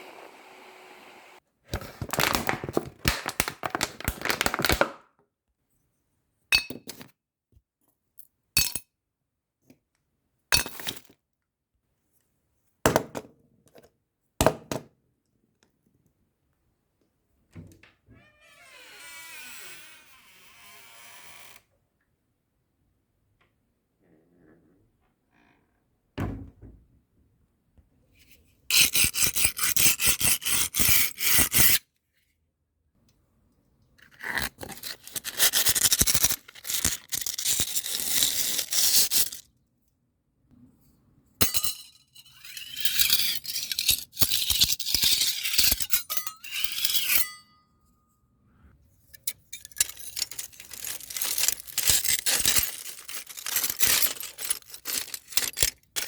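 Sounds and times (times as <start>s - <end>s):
harsh scraping: 49.2s - 56.0s.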